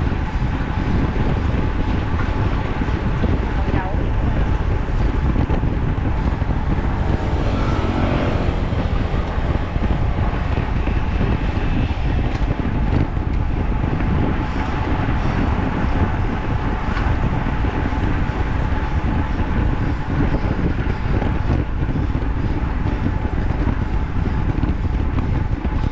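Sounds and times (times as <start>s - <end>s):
wind and road rumble: 0.0s - 25.9s.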